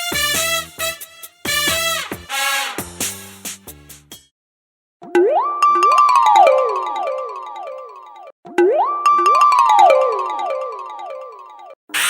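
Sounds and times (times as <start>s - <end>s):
brassy comedic musical notes: 0.0s - 3.5s.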